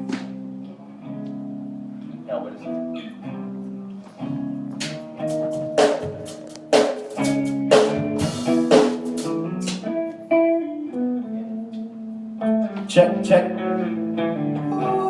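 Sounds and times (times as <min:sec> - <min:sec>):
sustained guitar notes: 0:00.0 - 0:15.0
drum kit hits: 0:04.8 - 0:10.0.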